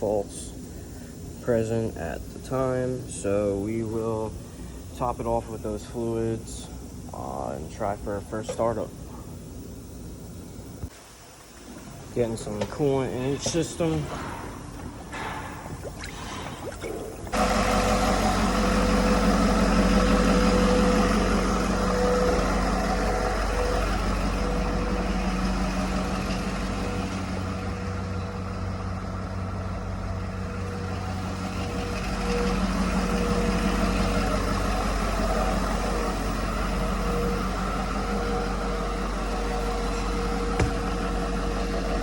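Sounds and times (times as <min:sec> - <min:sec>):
diesel engine idling: 0:17.3 - 0:42.0.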